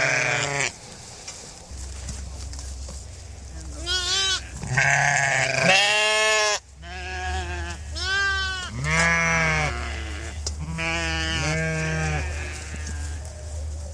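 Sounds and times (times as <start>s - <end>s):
sheep bleating: 0.0s - 0.8s, 3.8s - 13.2s
steady low hum: 0.0s - 13.9s.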